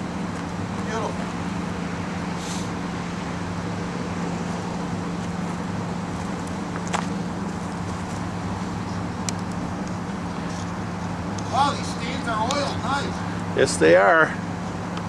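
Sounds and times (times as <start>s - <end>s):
truck engine idling: 4.6s - 15.0s.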